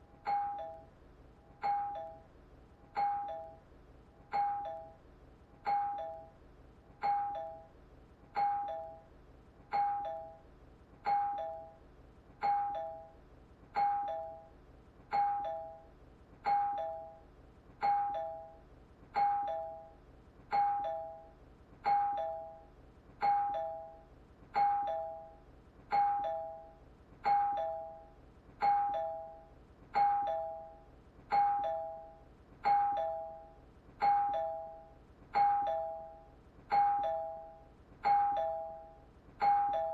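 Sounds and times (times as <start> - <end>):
two-note doorbell chime: 0.2 - 0.9, 1.6 - 2.3, 3.0 - 3.6, 4.3 - 5.0, 5.6 - 6.4, 7.0 - 7.7, 8.4 - 9.1, 9.7 - 10.4, 11.0 - 11.8, 12.4 - 13.2, 13.8 - 15.9, 16.5 - 17.2, 17.8 - 18.6, 19.2 - 39.9.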